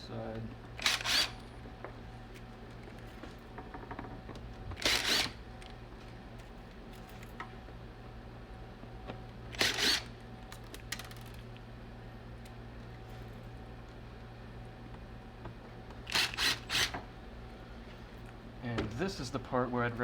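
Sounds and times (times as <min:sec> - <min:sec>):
steady low hum: 0:00.0 - 0:20.0
impact driver running: 0:00.8 - 0:01.4, 0:04.8 - 0:05.4, 0:09.6 - 0:10.1, 0:16.1 - 0:17.0.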